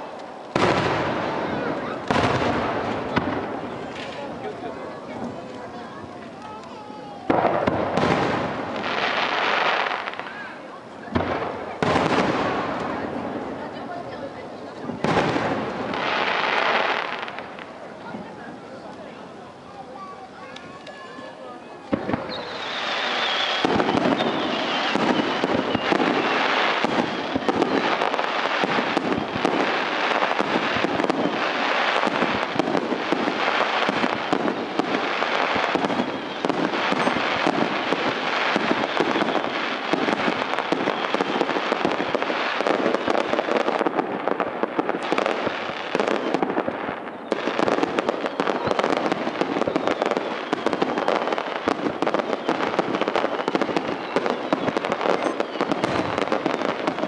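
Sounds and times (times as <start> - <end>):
fireworks shell bursts and crackling: 21.9 - 46.7.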